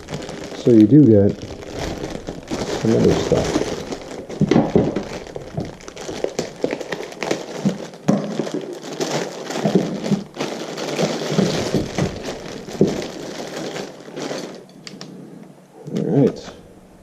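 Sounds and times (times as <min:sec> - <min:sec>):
packaging rustling and crinkling: 0:00.0 - 0:15.2.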